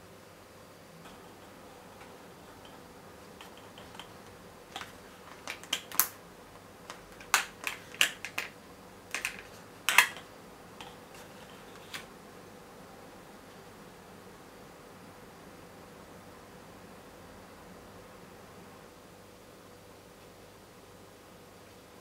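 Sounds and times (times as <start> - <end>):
faint room hiss: 0.0 - 22.0
small hard objects clicking: 3.4 - 6.2, 6.9 - 10.2.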